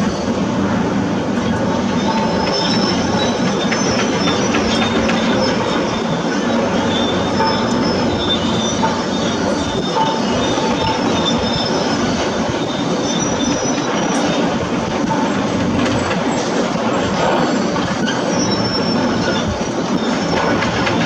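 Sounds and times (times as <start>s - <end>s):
diesel engine running: 0.0s - 21.0s
high metallic squeals: 0.0s - 21.0s.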